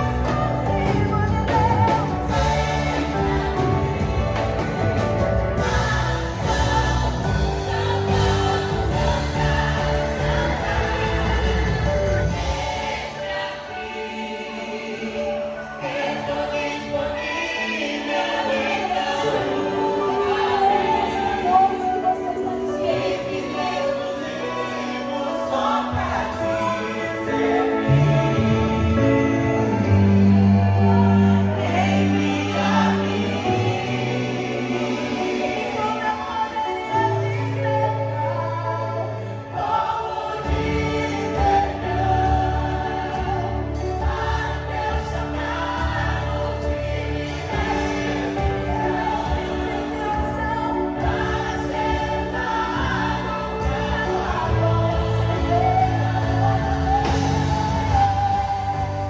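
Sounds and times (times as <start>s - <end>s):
steady bass line: 0.0s - 13.0s, 40.5s - 59.0s
band accompaniment: 0.0s - 59.0s
choir singing: 0.0s - 59.0s
electronic keyboard chords: 0.0s - 59.0s.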